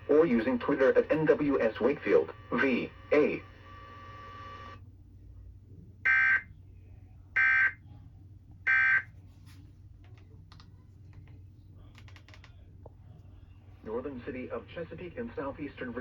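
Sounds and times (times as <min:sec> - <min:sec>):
faint clicks: 0:10.0 - 0:13.3.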